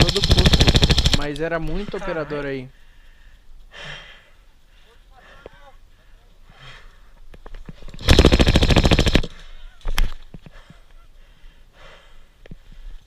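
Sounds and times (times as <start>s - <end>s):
airsoft gun full-auto bursts: 0.0s - 1.4s, 8.0s - 9.4s.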